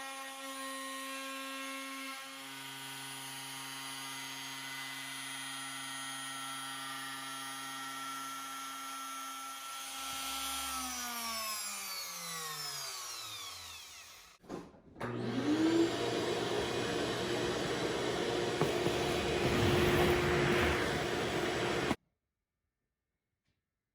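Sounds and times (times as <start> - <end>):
spindle motor running: 15.1 - 22.0
motor high whine: 15.2 - 22.0
rough noise: 16.4 - 22.0.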